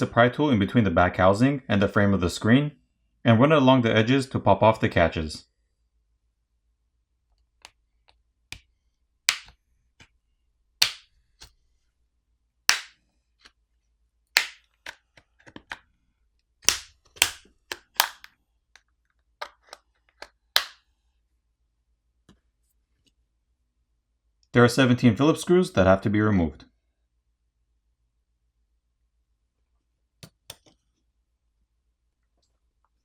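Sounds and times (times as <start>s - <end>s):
plastic catches snapping: 9.3s - 9.6s, 10.8s - 11.5s, 12.7s - 13.0s, 16.6s - 18.3s, 19.4s - 20.8s.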